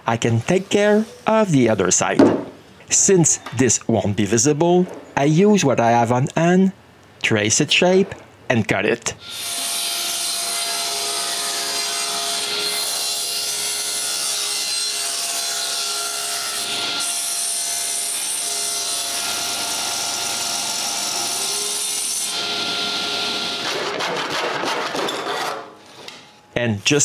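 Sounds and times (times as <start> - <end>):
power saw cutting wood: 9.2 - 25.7.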